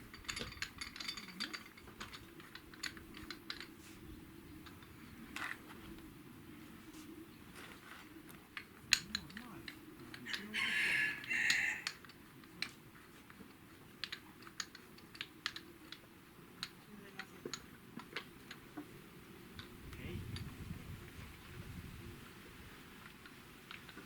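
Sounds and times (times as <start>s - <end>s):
light clicks and taps: 8.3s - 10.4s, 11.8s - 18.9s
two-part animal call: 10.3s - 12.0s.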